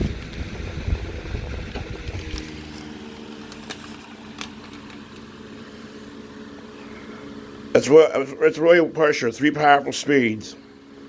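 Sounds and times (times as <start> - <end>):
wind rumble on microphone: 0.0 - 2.6
table fan humming: 0.0 - 11.0.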